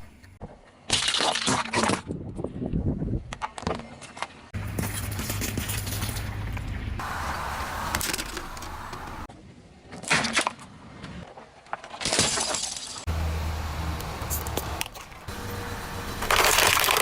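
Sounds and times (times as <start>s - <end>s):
objects cracking under car tyre: 3.3s - 9.3s, 16.2s - 17.0s.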